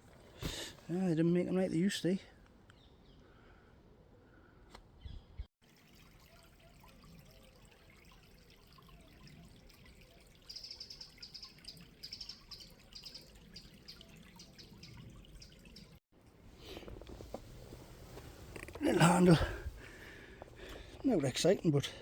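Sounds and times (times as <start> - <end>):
river trickling: 5.6 - 16.0
small bird singing: 10.1 - 16.0.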